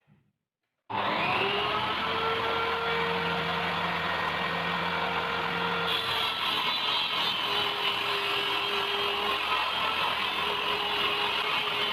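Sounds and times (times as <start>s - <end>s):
power tool motor whining: 0.9s - 11.9s.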